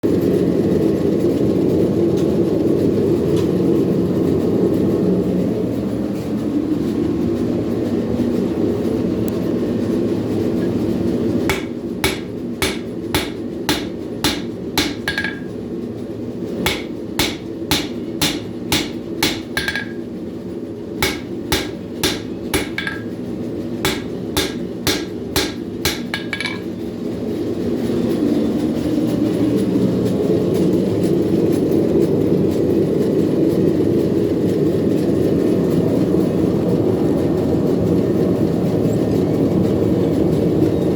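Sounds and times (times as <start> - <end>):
hammer striking steel on anvil: 11.5 - 15.6, 16.6 - 20.2, 21.0 - 26.8.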